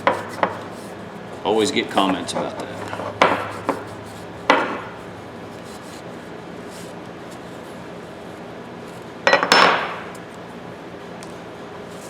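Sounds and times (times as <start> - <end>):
low workshop hum: 0.0 - 12.0
tool knocking on workbench: 2.0 - 5.0.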